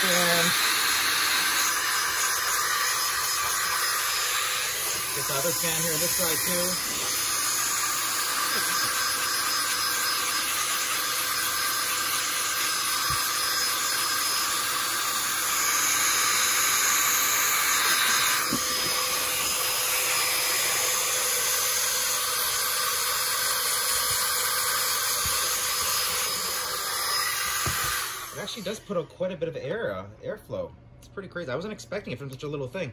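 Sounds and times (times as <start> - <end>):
electric air duster whining: 0.0 - 28.8.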